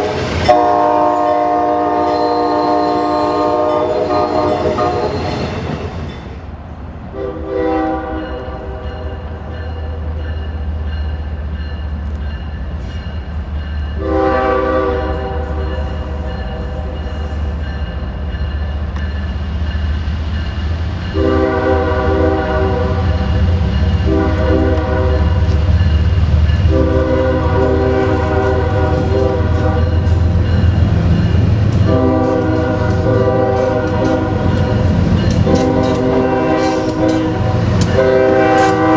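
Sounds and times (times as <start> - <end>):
locomotive air horn blasts: 0.0 - 5.4, 7.2 - 9.2, 14.0 - 16.2, 21.2 - 23.4, 24.0 - 25.6, 26.7 - 30.2, 31.7 - 34.7, 35.4 - 38.9
train low rumble: 0.0 - 38.9.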